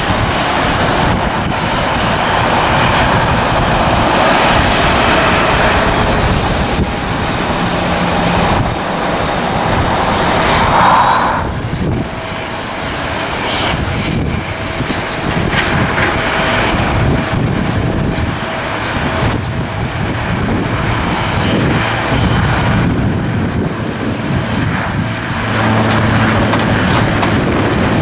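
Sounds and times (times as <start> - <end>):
steady background rumble: 0.0 - 28.0
wind buffeting microphone: 0.0 - 28.0.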